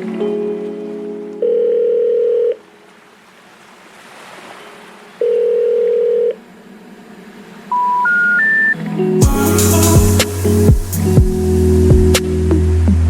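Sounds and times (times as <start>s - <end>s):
telephone ringback beeps: 1.4s - 2.6s, 5.2s - 6.4s, 7.7s - 8.8s
faint hiss: 9.2s - 12.4s.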